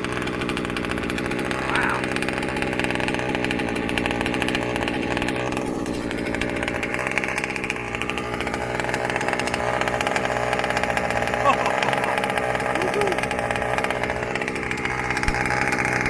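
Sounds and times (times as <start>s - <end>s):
small two-stroke engine idling: 0.0s - 16.0s.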